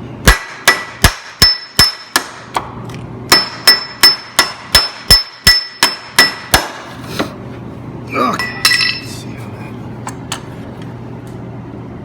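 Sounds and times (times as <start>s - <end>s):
hammer striking steel: 0.2s - 2.7s, 3.3s - 6.9s, 8.4s - 9.1s.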